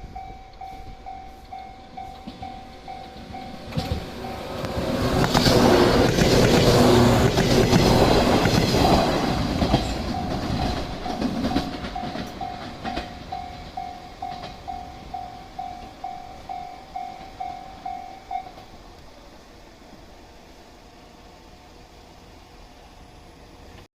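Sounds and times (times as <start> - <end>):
level crossing warning bell: 0.0 - 5.8, 9.3 - 18.8
train wheels clacking over rail joints: 0.6 - 18.7.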